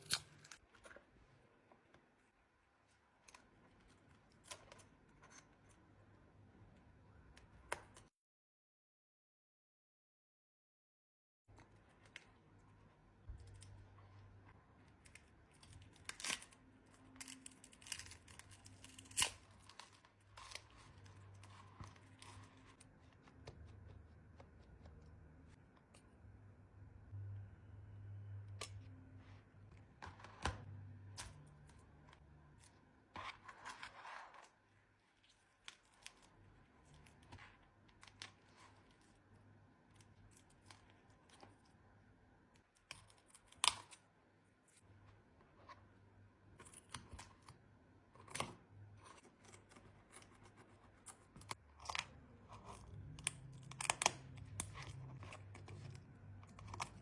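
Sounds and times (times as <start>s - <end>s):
faint low hum: 11.5s - 43.4s.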